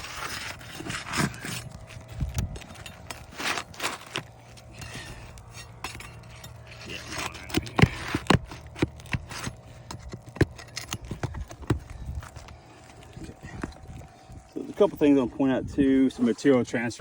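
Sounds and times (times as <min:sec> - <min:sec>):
roof shingles scraping: 0:00.0 - 0:13.6.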